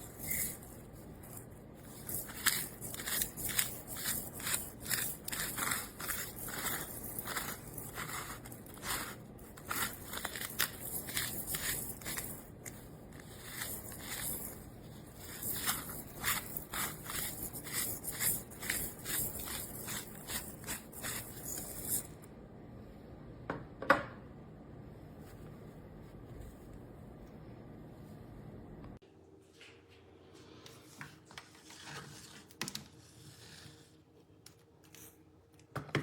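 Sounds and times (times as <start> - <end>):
spice grinder crunching: 0.0 - 22.2.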